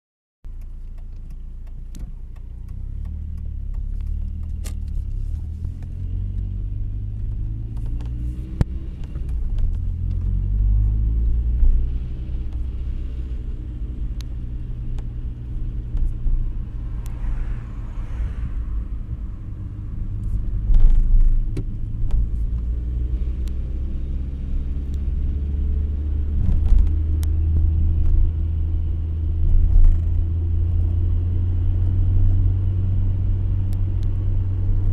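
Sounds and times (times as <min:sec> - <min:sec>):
car engine and road rumble: 0:00.4 - 0:34.9
sharp clicks and rattles: 0:00.5 - 0:10.3.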